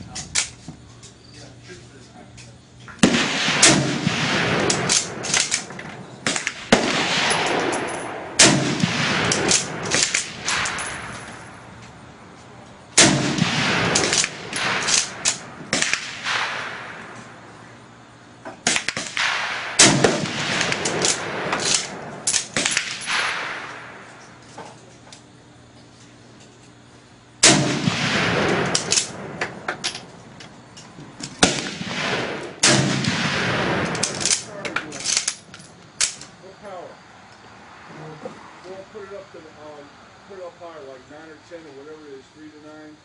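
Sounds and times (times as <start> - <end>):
sharp quick gunshots: 3.0 - 11.1, 13.0 - 17.1, 18.6 - 24.1, 27.4 - 29.7, 31.4 - 34.6
loud echoing rifle shots: 3.0 - 11.7, 13.0 - 17.5, 18.6 - 24.2, 27.4 - 30.1, 31.3 - 34.8.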